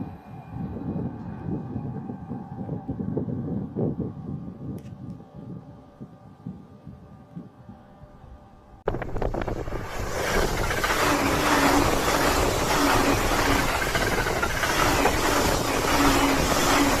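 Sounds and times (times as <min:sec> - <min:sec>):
low hum: 0:00.0 - 0:17.0
train rushing past: 0:08.8 - 0:17.0.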